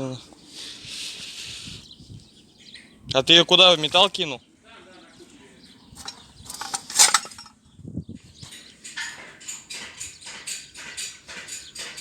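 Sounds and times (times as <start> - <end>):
scrap metal clinking and clattering: 6.0 - 7.6.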